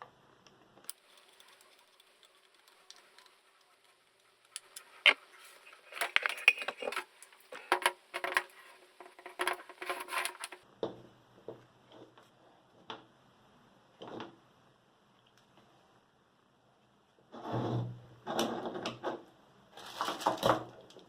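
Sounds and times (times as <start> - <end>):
metallic clicking and rattling: 0.9 - 10.6.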